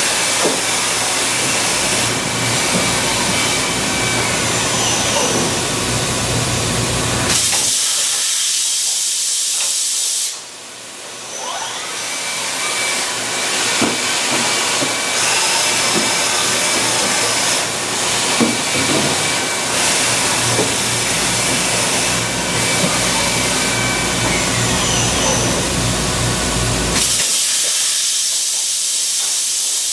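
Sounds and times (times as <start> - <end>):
high machine whine: 0.0 - 7.7, 11.2 - 27.5
machining center hissing: 14.2 - 29.9.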